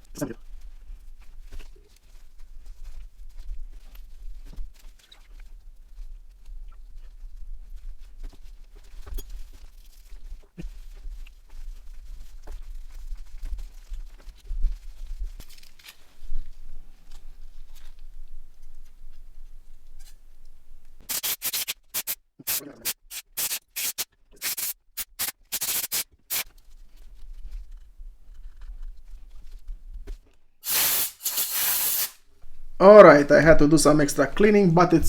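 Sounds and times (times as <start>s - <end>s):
scrubbing small parts: 21.1s - 26.4s, 30.6s - 32.2s
short hissing spray bursts: 21.1s - 26.4s, 30.6s - 32.2s.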